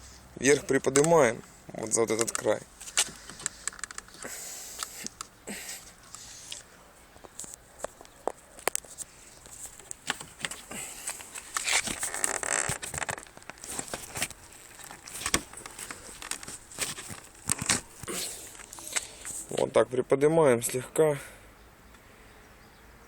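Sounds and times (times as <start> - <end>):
plastic clicks and creaks: 0.8 - 1.5, 2.1 - 5.3, 7.2 - 19.7
scraping creak: 10.5 - 19.5.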